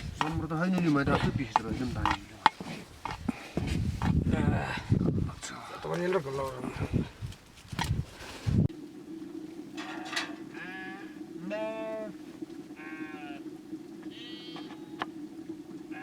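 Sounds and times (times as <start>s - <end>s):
steady low hum: 8.6s - 16.0s
sheep bleating: 10.0s - 12.1s, 12.8s - 13.4s, 14.1s - 14.8s.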